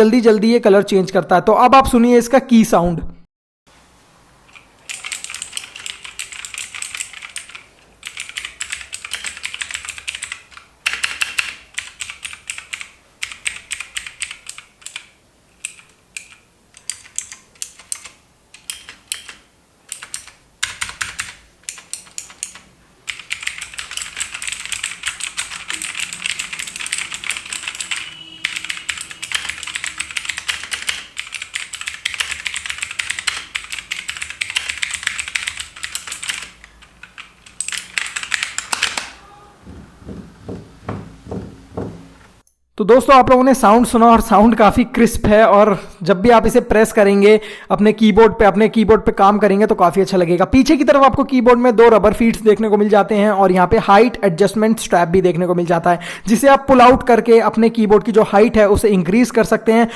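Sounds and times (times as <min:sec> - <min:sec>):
mechanical keyboard typing: 0:04.5 - 0:39.2.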